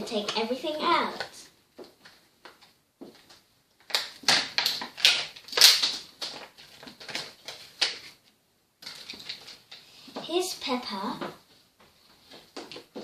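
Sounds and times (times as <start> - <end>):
plastic toy packaging rustling: 3.2 - 10.1.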